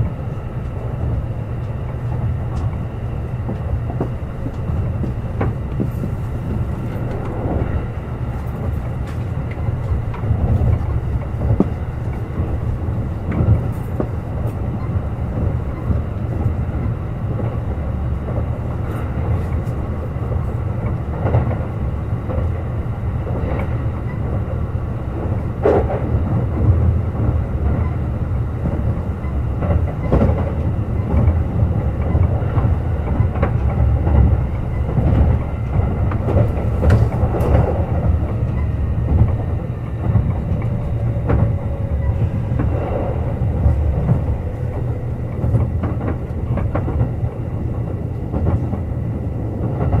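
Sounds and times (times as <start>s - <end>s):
train running rumble: 0.0s - 50.0s
wheels clicking over rail joints: 28.6s - 50.0s.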